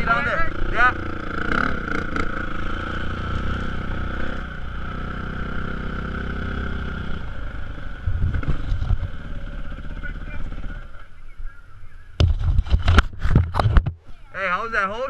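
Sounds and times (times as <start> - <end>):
dirt bike engine running: 0.0 - 11.6.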